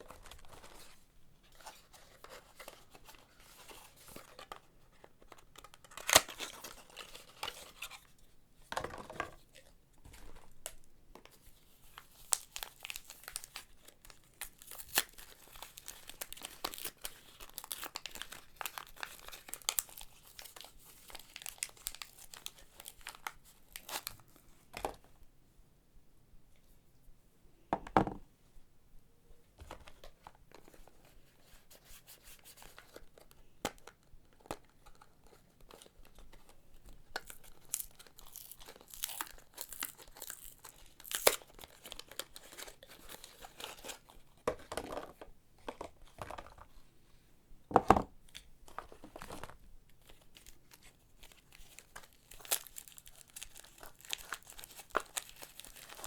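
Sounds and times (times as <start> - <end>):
wrapping tearing and crinkling: 0.0 - 1.0, 1.6 - 8.1, 11.6 - 24.4, 32.0 - 44.2, 48.3 - 56.0.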